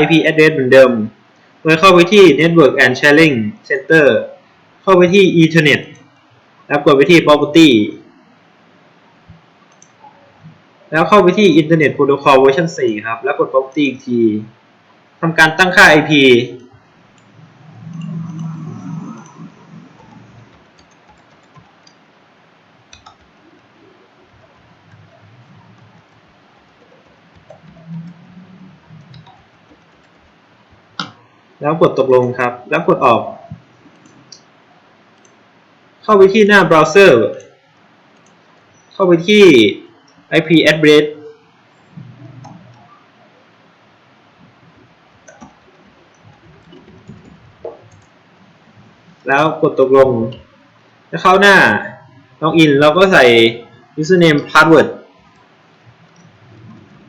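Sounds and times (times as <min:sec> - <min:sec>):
mouse and keyboard clicks: 0:17.2 - 0:22.0, 0:24.6 - 0:30.3
low murmur: 0:23.5 - 0:29.6.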